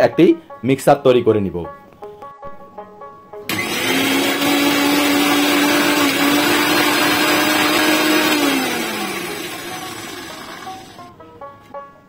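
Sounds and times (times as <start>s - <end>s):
blender motor whining: 3.5s - 11.1s.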